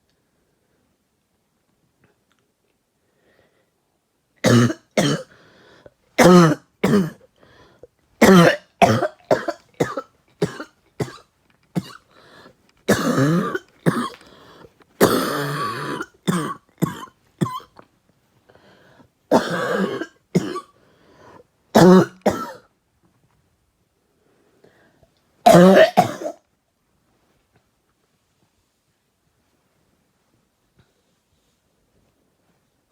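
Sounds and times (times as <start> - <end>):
person coughing harshly: 4.4 - 5.4, 6.2 - 7.2, 8.2 - 11.2, 11.8 - 12.0, 12.9 - 14.2, 15.0 - 17.7, 19.3 - 20.7, 21.8 - 22.7, 25.5 - 26.4.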